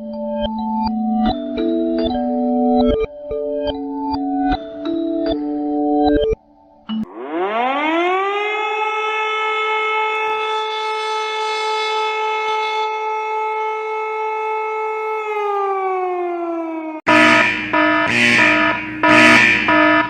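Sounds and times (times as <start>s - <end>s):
civil defense siren wailing: 7.0s - 20.0s.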